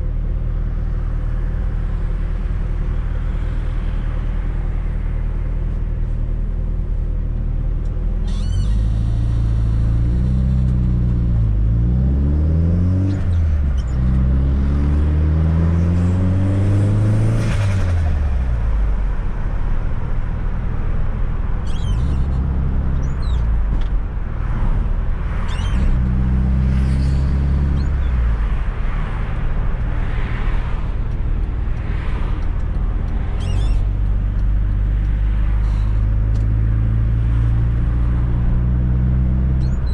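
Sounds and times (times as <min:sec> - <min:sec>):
car engine accelerating: 0:06.9 - 0:39.9
squeaky clutch pedal: 0:08.0 - 0:11.5, 0:13.0 - 0:14.3, 0:21.5 - 0:24.6, 0:25.3 - 0:29.0, 0:31.9 - 0:36.6, 0:39.2 - 0:39.9.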